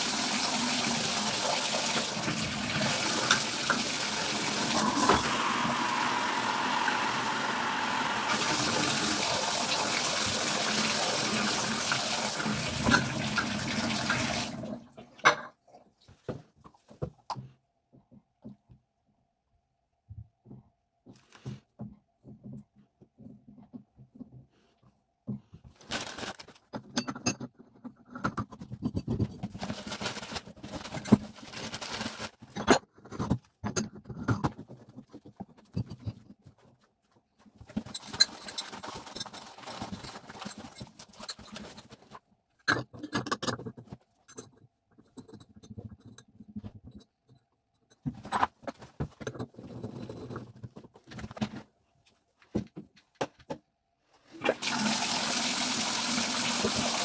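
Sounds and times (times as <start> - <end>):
water gushing from faucet: 0.0 - 14.8, 54.4 - 57.0
clicks and scrapes of hard parts: 26.6 - 29.8, 37.5 - 51.7.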